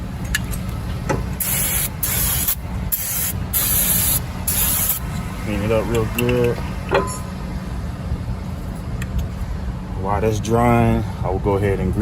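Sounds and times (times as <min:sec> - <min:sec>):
aerosol can spraying: 0:01.4 - 0:05.0.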